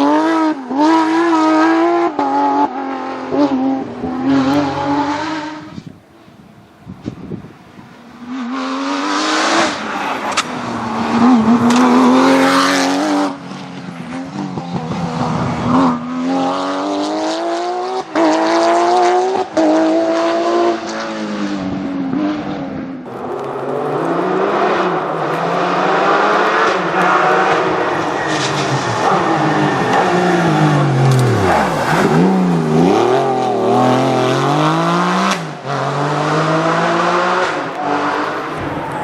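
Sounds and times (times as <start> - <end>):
rally car engines revving: 0.0 - 6.0, 8.1 - 39.0.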